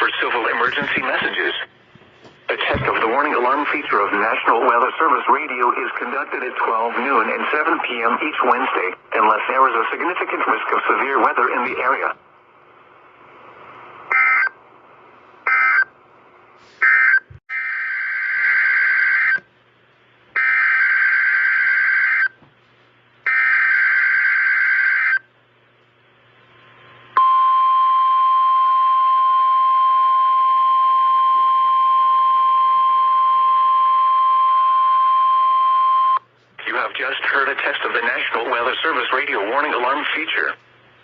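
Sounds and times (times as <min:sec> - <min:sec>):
steady alarm tone: 0:20.4 - 0:22.3, 0:23.3 - 0:25.2.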